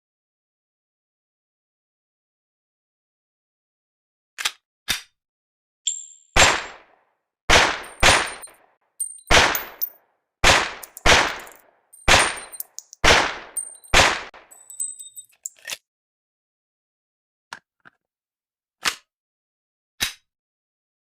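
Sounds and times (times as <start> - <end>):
pistol shots echoing: 6.4 - 6.9, 7.5 - 8.5, 9.3 - 14.6.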